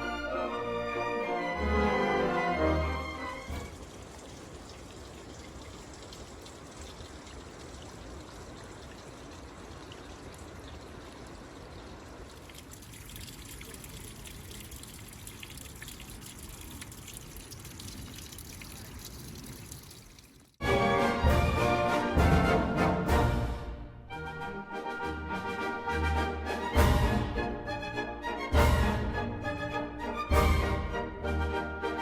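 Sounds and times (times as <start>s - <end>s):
water trickling and flowing: 1.9s - 20.6s.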